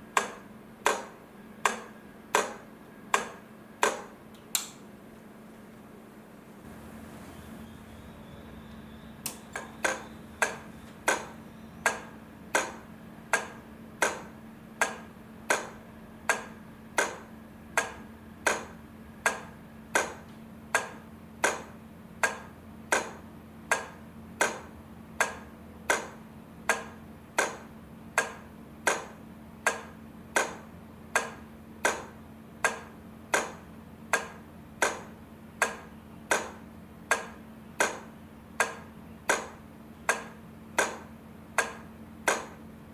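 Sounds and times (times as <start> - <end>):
faint electrical hum: 0.0 - 42.9
crossing light flasher clicking: 0.1 - 4.8, 8.5 - 42.7.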